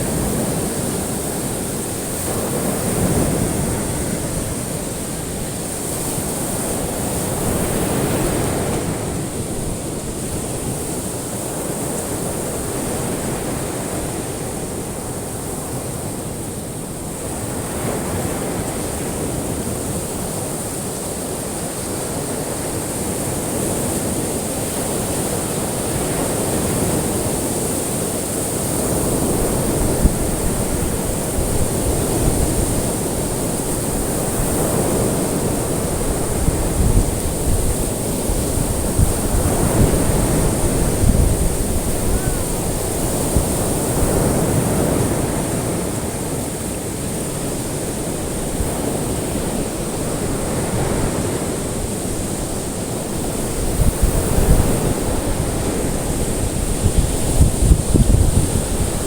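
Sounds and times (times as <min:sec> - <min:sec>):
ocean waves breaking: 0:00.0 - 0:59.0
faint high hiss: 0:35.2 - 0:44.5.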